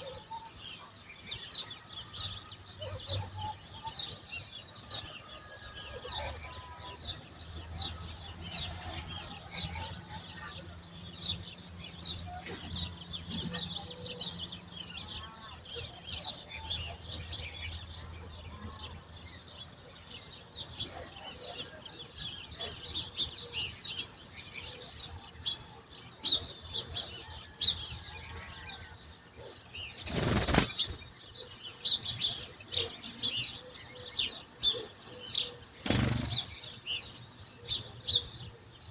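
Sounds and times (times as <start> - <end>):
songbirds chirping: 0.0 - 38.9.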